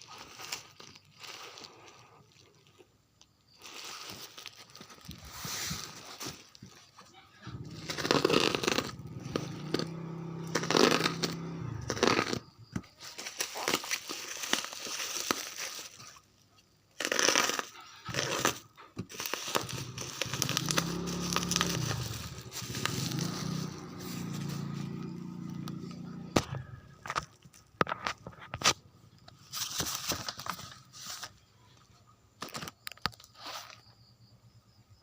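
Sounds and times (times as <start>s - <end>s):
plastic and cardboard crinkling: 0.0s - 31.8s, 32.4s - 33.8s.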